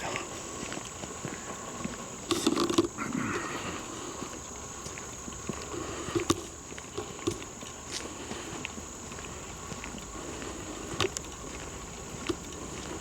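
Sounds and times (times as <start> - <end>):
footsteps on woodland trail: 0.0 - 13.0
camera handling noise: 2.3 - 2.9.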